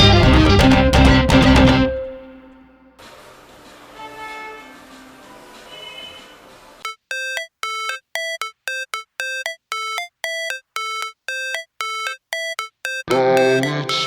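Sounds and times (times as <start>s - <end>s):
electronic ringtone melody: 6.8s - 14.0s.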